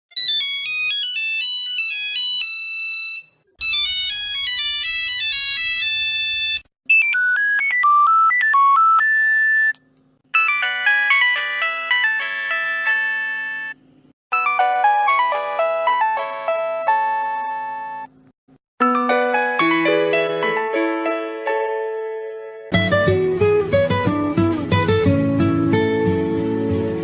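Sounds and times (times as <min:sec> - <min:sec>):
mobile phone ringtones: 0:00.2 - 0:09.7, 0:10.4 - 0:13.8.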